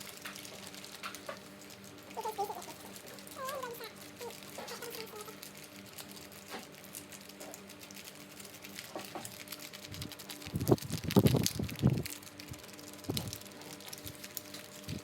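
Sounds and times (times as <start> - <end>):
chicken clucking: 2.2 - 3.9.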